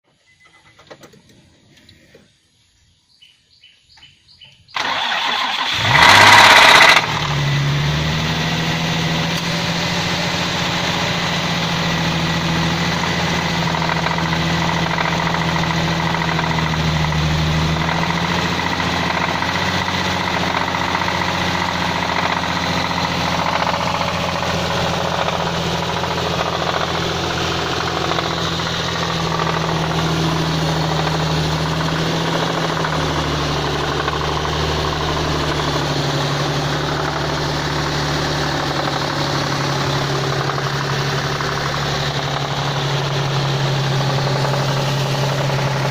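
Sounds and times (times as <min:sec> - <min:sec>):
car engine starting and idling: 0:04.7 - 0:45.9
engine knocking: 0:10.4 - 0:45.9.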